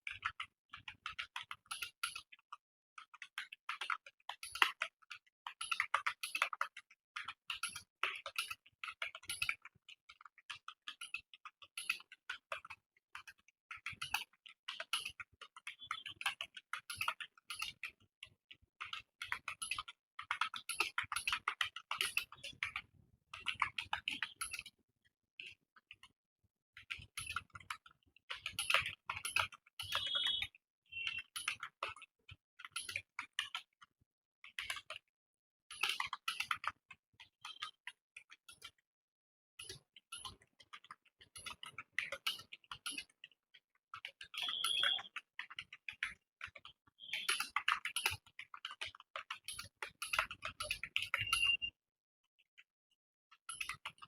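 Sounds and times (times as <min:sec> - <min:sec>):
keyboard typing: 0:15.7 - 0:16.2, 0:23.4 - 0:24.8, 0:28.6 - 0:31.8, 0:44.3 - 0:45.2, 0:46.6 - 0:48.3, 0:49.6 - 0:51.7.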